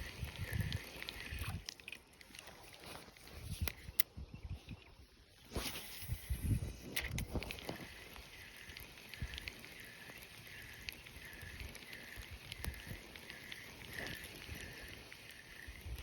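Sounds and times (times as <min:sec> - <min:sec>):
fishing reel whirring: 0:00.0 - 0:02.0, 0:05.6 - 0:16.0.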